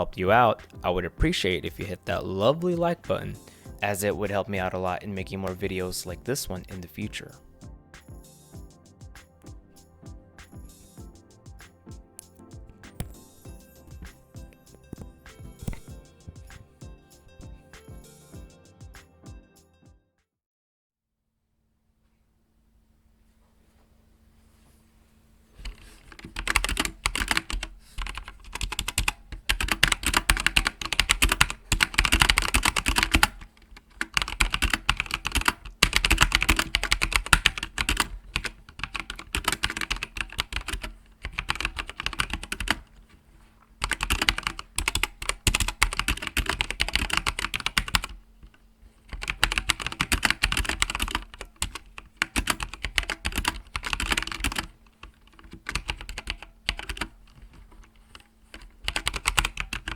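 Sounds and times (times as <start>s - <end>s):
mechanical keyboard key clacks: 25.7s - 42.8s, 43.8s - 48.2s, 49.1s - 59.9s.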